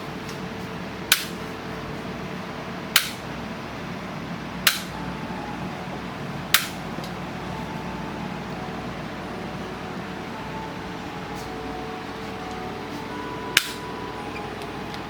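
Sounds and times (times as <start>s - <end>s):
steady low hum: 0.0s - 15.0s
sharp instrument clicks: 3.0s - 3.2s, 4.7s - 5.0s, 6.5s - 7.2s, 13.6s - 13.8s.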